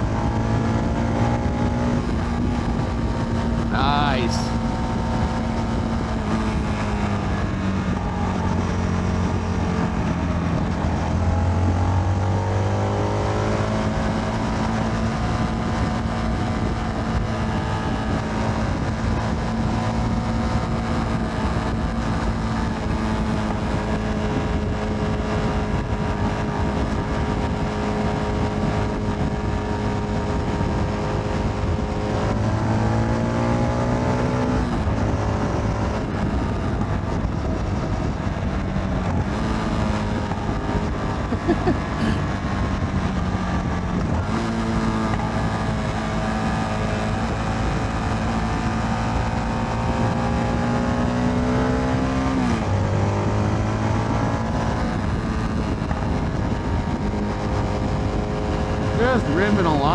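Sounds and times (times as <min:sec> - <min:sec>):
road and wind noise: 0:00.0 - 0:59.9.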